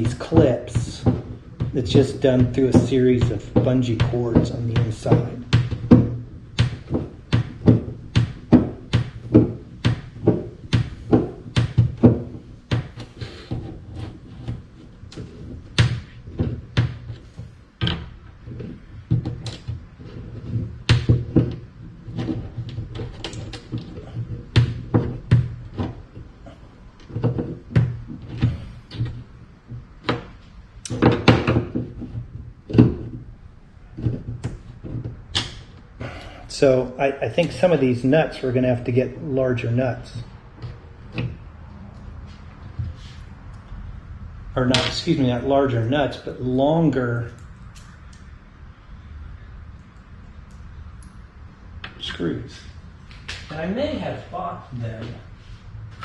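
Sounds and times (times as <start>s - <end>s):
knocks of hardware on wooden deck: 0.0s - 33.3s, 33.9s - 36.2s
steady low hum: 0.0s - 56.0s.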